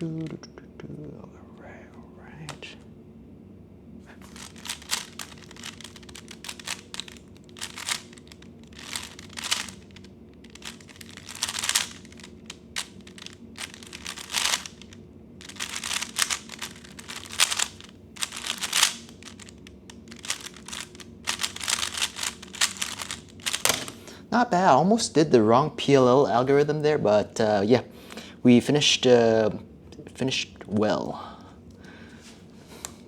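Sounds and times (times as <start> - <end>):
plastic puzzle cube clicking: 4.4 - 23.9.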